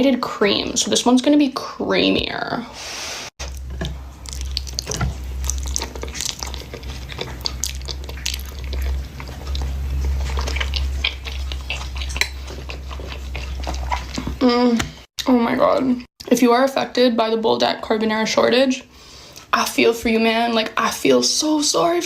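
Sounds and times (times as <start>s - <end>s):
steady low hum: 3.4s - 14.7s
slurping and chewing noodles: 3.4s - 15.1s.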